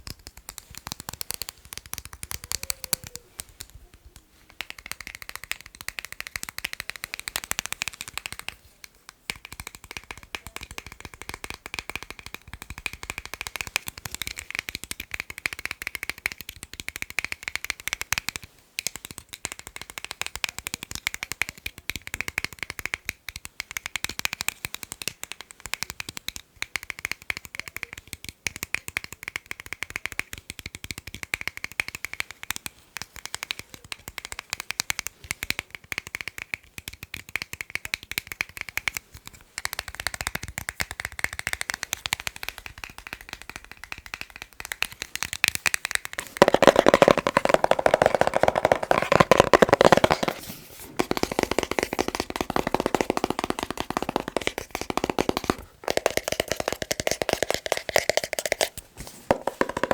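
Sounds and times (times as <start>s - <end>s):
fast tapping on hard objects: 0.0s - 3.8s, 4.5s - 59.9s.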